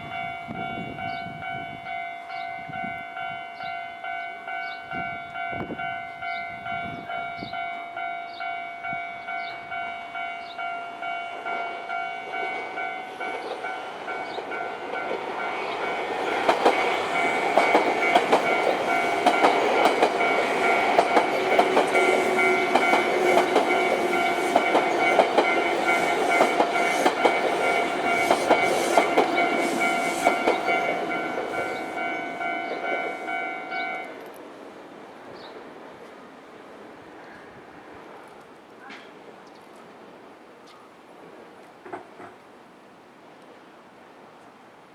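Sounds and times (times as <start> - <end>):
train wheels clattering: 12.4 - 33.2.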